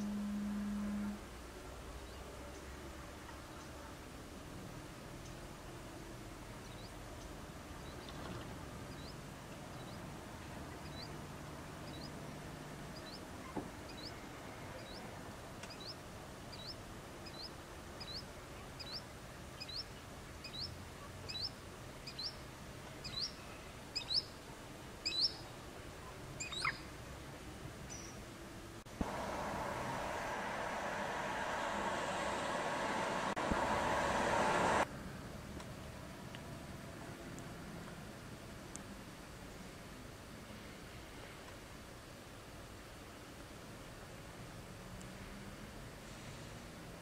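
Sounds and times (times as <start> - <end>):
small bird calling: 26.4 - 26.9.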